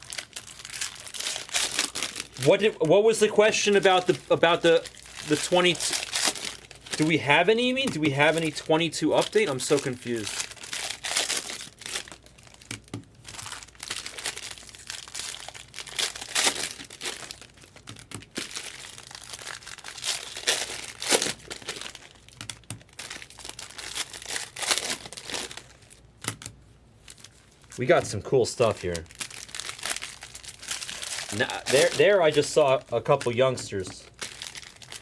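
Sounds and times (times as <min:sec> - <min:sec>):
plastic wrappers crinkling and tearing: 0:00.0 - 0:35.0.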